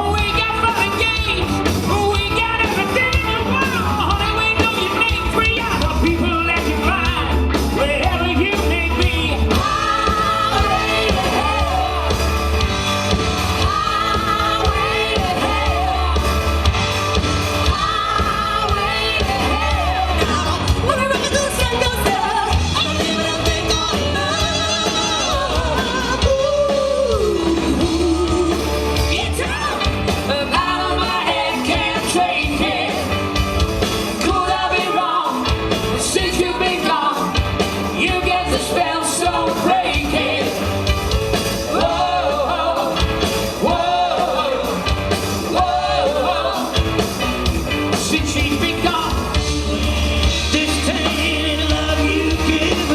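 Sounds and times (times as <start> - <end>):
bass beat: 35.5 - 52.9.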